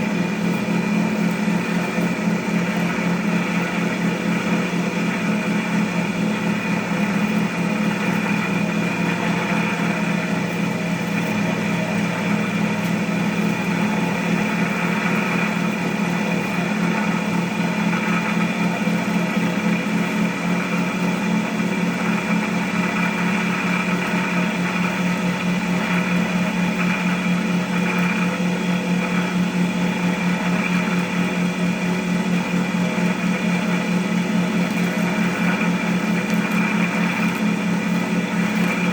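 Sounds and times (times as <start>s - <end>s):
cotton candy machine humming: 0.0s - 38.9s.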